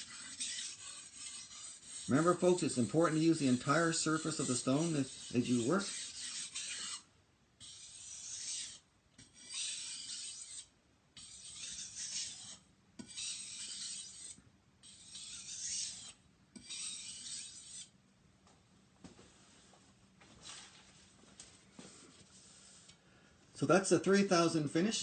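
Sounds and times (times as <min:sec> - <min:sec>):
knife sharpening on water stone: 0:00.0 - 0:17.9.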